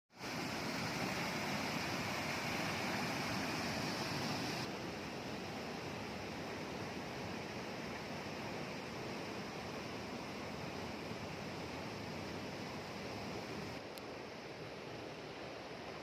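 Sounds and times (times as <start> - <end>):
river water rushing: 0.2 - 16.0.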